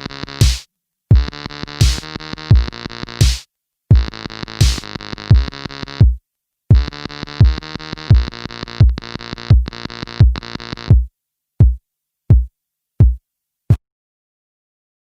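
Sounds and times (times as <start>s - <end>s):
buzzy synth sequence: 0.4s - 3.4s
electronic kick drum: 0.4s - 13.2s.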